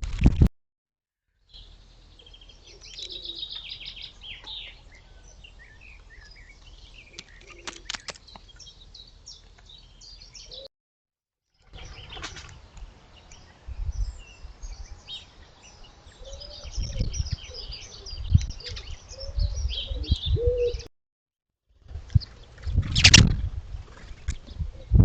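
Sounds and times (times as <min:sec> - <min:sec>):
small birds chirping: 0:01.3 - 0:10.7, 0:11.5 - 0:20.9, 0:21.9 - 0:25.0
sharp clicks: 0:07.1 - 0:08.5.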